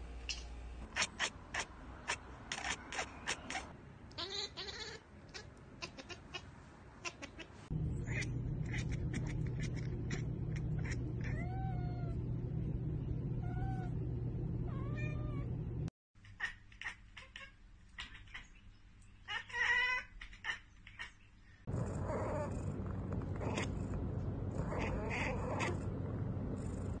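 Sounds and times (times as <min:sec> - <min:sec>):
cat chattering: 0:00.8 - 0:12.0, 0:16.2 - 0:18.6, 0:19.3 - 0:21.3, 0:24.6 - 0:27.0
steady low hum: 0:07.7 - 0:15.9, 0:21.7 - 0:27.0.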